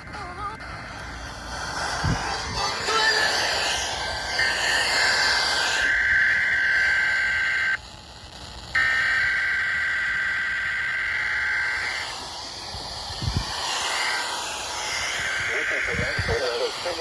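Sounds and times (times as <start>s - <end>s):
steady high alarm tone: 0.0s - 7.8s, 8.8s - 17.0s
radio hiss: 0.0s - 17.0s.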